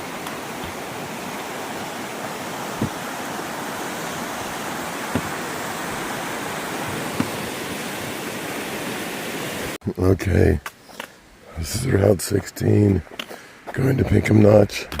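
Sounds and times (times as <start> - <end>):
flowing water rushing: 0.0 - 9.8.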